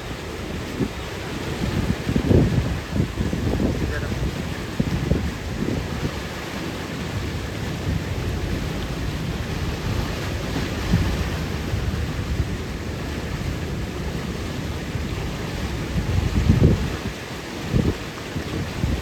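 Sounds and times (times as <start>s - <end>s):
steady rushing noise with rumble: 0.0s - 19.0s.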